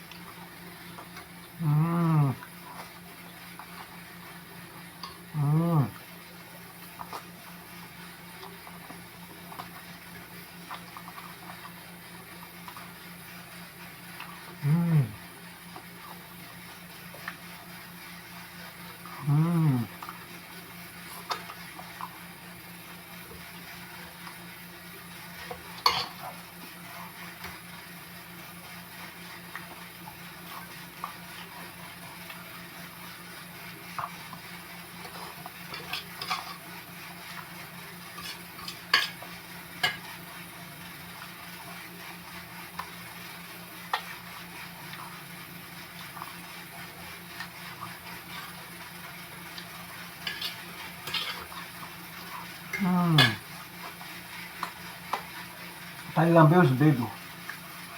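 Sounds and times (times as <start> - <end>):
steady low hum: 0.0 - 9.6, 10.6 - 21.4.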